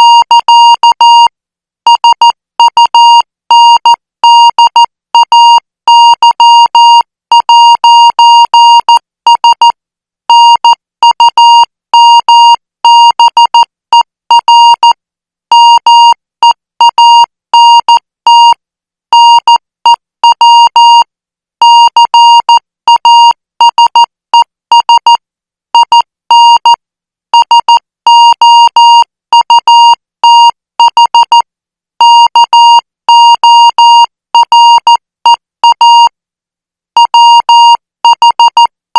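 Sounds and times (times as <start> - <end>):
morse code beeps: 0.0 - 1.3, 1.9 - 9.7, 14.3 - 16.2, 20.2 - 21.0, 24.7 - 25.1, 32.0 - 35.0, 35.6 - 36.1, 37.0 - 38.7.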